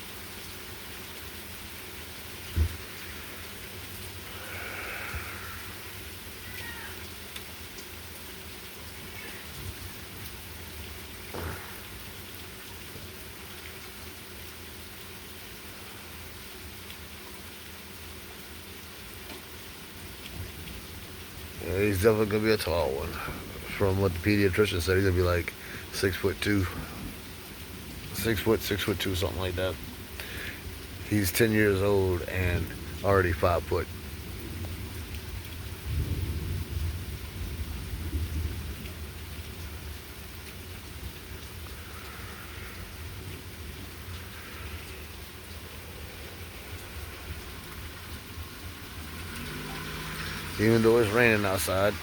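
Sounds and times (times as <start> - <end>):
light rain falling: 0.0 - 52.0
thunder rumbling: 11.3 - 12.2, 21.6 - 25.1, 32.2 - 39.9.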